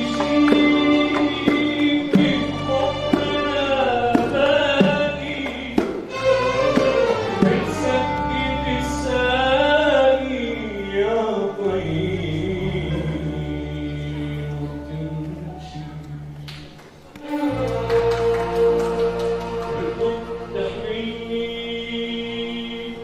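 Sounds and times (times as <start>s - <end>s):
drum strokes: 0.0s - 8.1s
man singing: 0.0s - 16.5s, 17.3s - 23.0s
ensemble of musicians: 0.0s - 23.0s.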